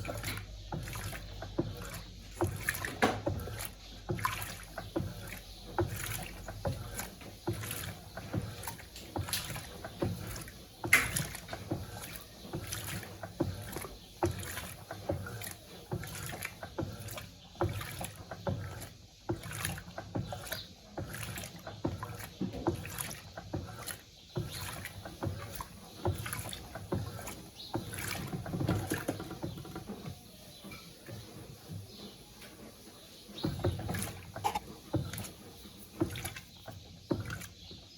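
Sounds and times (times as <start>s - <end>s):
washing machine agitating: 0.0s - 37.9s
water sloshing and splashing: 0.0s - 37.9s.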